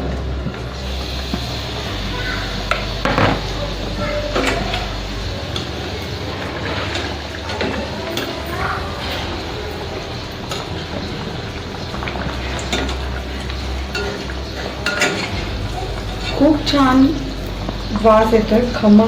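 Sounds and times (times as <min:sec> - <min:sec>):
food deep-frying in hot oil: 0:00.0 - 0:19.0.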